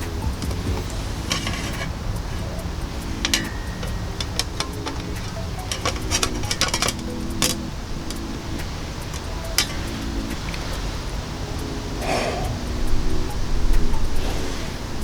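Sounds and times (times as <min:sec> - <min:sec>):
metal parts and tools clinking: 0:00.0 - 0:11.8
steady low rumble: 0:00.0 - 0:15.0.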